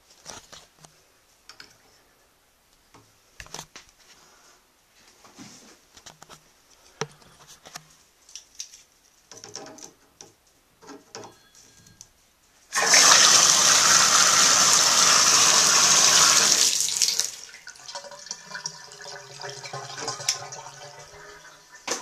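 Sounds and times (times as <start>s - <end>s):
water rushing through valve: 12.7s - 21.9s.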